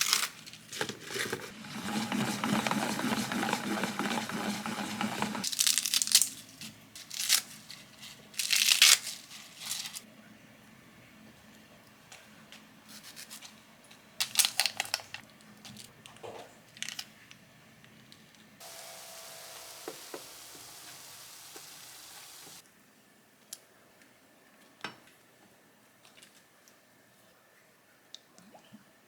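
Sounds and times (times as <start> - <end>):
kitchen rustles and clicks: 0.0 - 10.0
steady hiss: 18.6 - 22.6.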